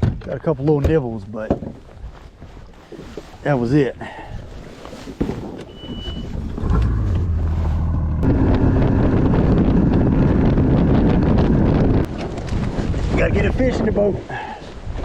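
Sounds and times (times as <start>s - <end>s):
wind buffeting microphone: 3.9s - 15.0s
boat motor drone: 5.8s - 12.1s.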